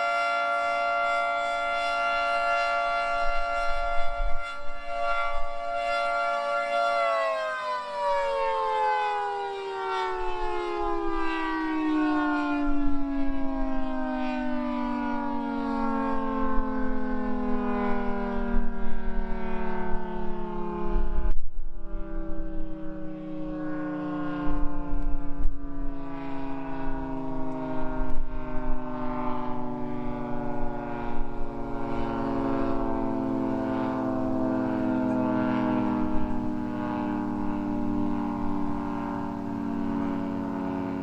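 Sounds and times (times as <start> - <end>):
two-tone rotating siren: 0.0 - 41.0
wind buffeting microphone: 2.2 - 5.8, 16.2 - 41.0.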